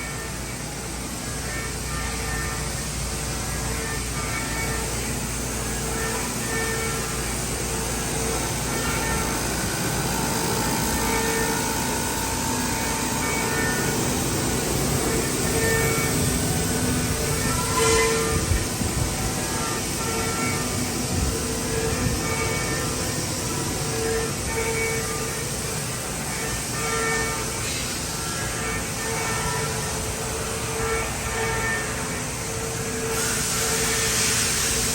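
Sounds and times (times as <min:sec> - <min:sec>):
machining center rushing noise: 0:00.0 - 0:34.9
bright hiss: 0:04.4 - 0:34.9.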